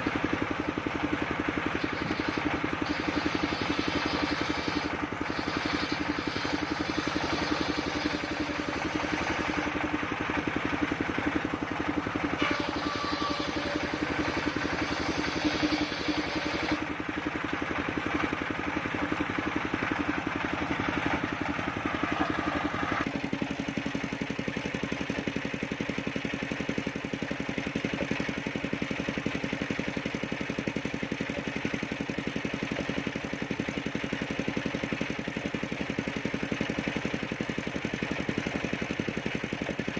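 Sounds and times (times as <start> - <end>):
sawmill engine running: 0.0 - 39.9
bright noisy sawing layer: 1.2 - 16.9, 20.1 - 23.1.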